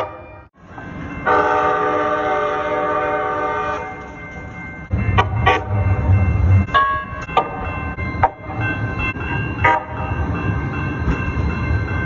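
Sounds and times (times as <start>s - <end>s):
low rumble of train: 0.0s - 12.0s
train bell strikes: 0.0s - 12.0s
train horn blast: 1.3s - 4.0s, 5.2s - 5.8s.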